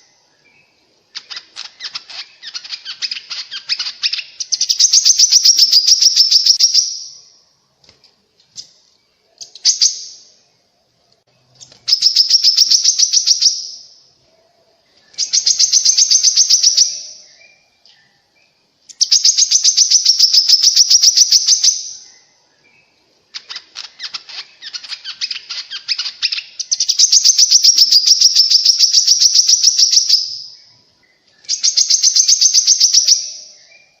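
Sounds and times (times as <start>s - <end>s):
songbird trilling: 1.3s - 7.2s, 11.8s - 13.9s, 15.1s - 17.5s, 18.9s - 22.4s, 23.4s - 30.6s, 31.4s - 34.0s.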